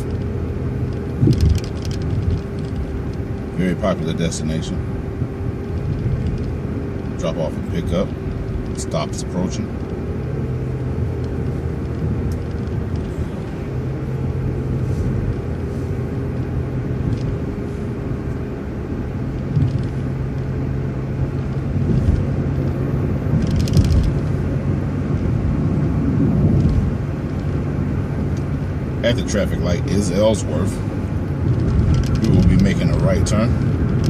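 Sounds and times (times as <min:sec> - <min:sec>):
rattling clicks: 0:00.0 - 0:03.5, 0:23.3 - 0:24.4, 0:31.4 - 0:34.0
bus engine hum: 0:00.0 - 0:34.0
road noise: 0:00.0 - 0:34.0.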